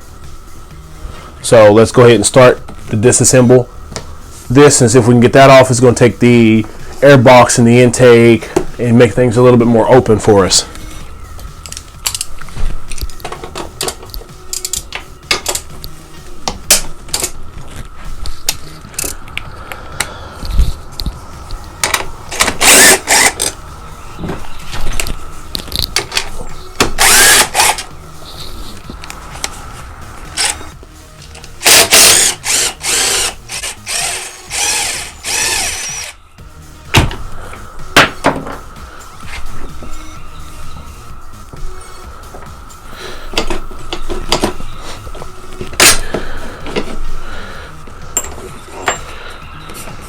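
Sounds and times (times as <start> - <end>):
hand tools clicking and clanking: 11.5 - 19.4, 43.3 - 47.1, 48.0 - 50.0
power tool spinning out bolts: 21.8 - 23.6, 26.9 - 27.9, 31.6 - 36.2.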